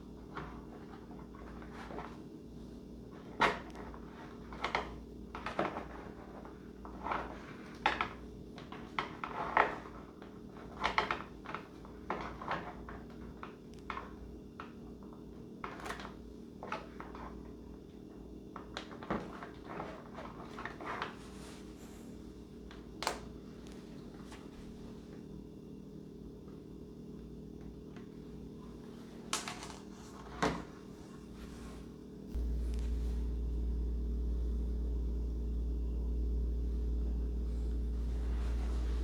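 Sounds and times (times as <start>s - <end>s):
steady low hum: 32.3s - 39.0s.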